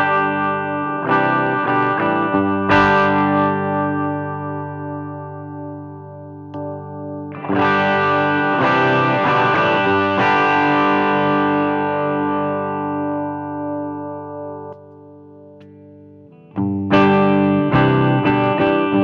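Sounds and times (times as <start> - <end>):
overdriven electric guitar chords: 0.0 - 19.0.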